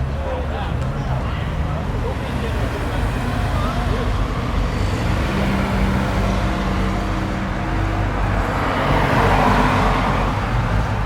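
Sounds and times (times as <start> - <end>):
car engines rumbling: 0.0 - 11.0
vehicle passing close by: 2.3 - 11.0.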